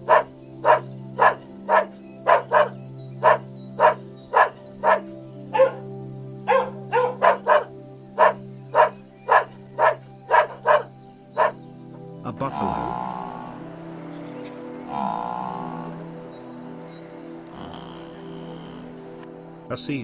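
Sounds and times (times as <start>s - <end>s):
dog barking: 0.0s - 5.8s, 6.5s - 11.6s, 17.5s - 19.1s.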